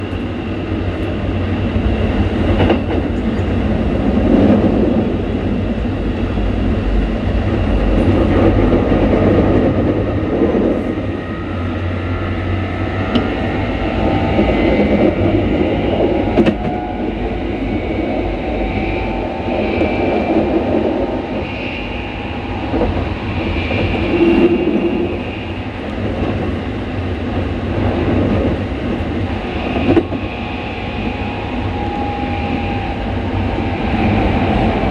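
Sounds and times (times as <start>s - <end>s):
rail noise: 0.0s - 34.9s
train traction motor whine: 9.9s - 34.9s.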